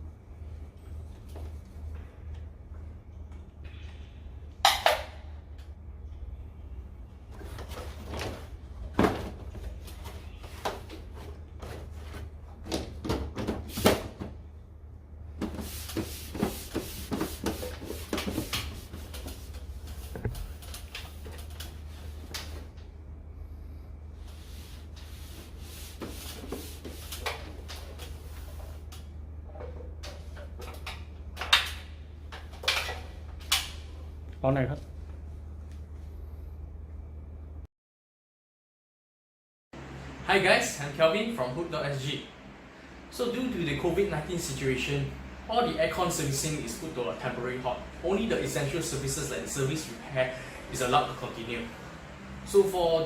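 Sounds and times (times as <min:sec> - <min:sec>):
steady low hum: 0:14.1 - 0:37.7.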